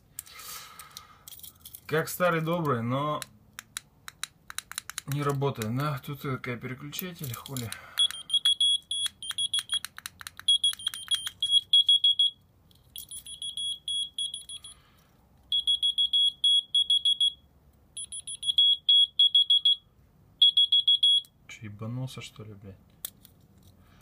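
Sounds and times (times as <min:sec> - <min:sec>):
sharp clicks: 0:02.6 - 0:05.8, 0:07.0 - 0:11.5
shrill keychain beeps: 0:08.0 - 0:12.4, 0:13.0 - 0:14.8, 0:15.5 - 0:17.4, 0:18.0 - 0:19.8, 0:20.4 - 0:21.3.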